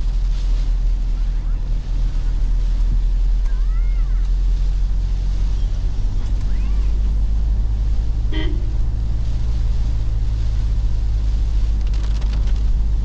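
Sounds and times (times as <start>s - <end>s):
car driving rumble: 0.0s - 13.0s
car horn toot: 8.3s - 8.9s.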